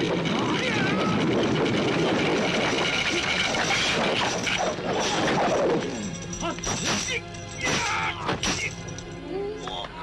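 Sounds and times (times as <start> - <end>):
film music score: 0.0 - 10.0
glass shattering: 2.4 - 9.2.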